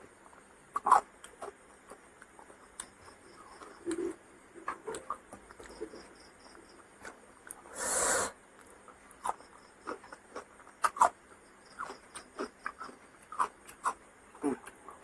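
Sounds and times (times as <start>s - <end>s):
person chewing: 8.6s - 15.0s.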